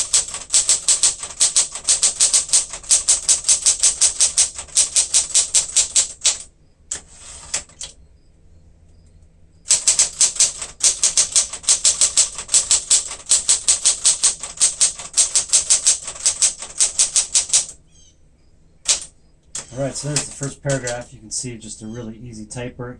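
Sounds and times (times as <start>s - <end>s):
manual typewriter keystrokes: 0.0s - 8.0s, 9.7s - 17.8s, 18.8s - 21.1s.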